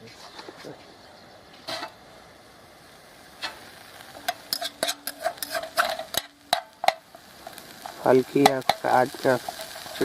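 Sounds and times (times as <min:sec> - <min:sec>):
spoon scraping a pan: 0:04.2 - 0:10.0.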